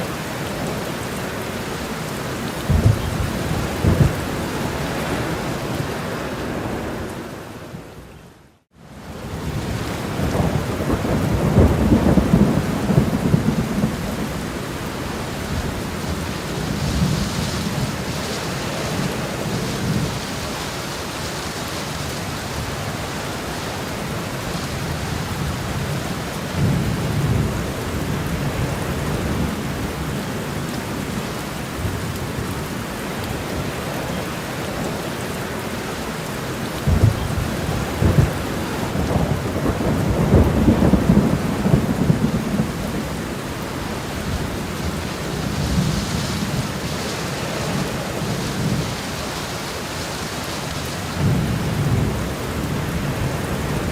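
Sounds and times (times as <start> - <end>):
steady rain falling: 0.0 - 53.9
thunder rolling: 2.6 - 6.0, 9.5 - 20.4, 36.9 - 43.2.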